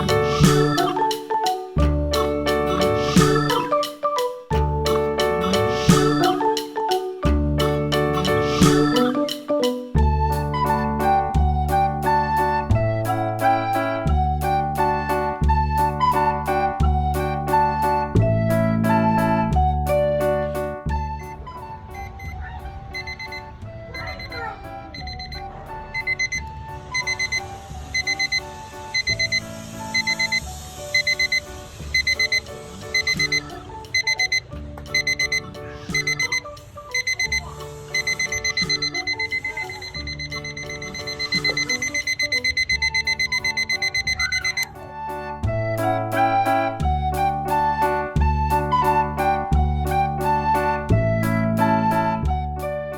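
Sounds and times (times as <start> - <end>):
alarm clock beeping: 0.0 - 4.0, 4.8 - 6.6, 8.2 - 9.4, 23.0 - 44.8
background piano music: 0.0 - 52.9.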